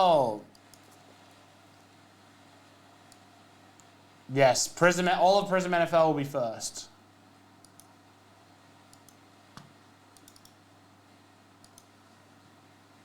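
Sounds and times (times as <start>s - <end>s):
computer keyboard and mouse clicks: 0.5s - 1.0s, 7.6s - 7.9s, 8.9s - 10.6s, 11.6s - 12.0s.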